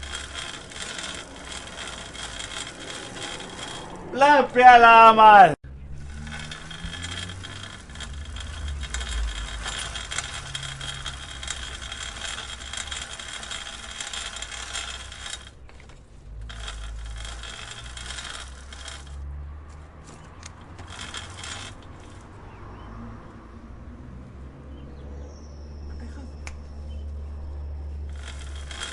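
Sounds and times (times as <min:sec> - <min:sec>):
bicycle chain clicking: 0:00.0 - 0:04.6, 0:05.8 - 0:22.6, 0:28.0 - 0:28.9.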